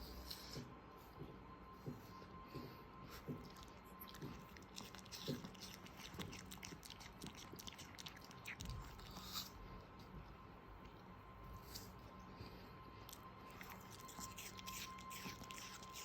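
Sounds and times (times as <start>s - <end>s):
pet crunching apple: 3.1s - 12.1s, 13.0s - 16.0s.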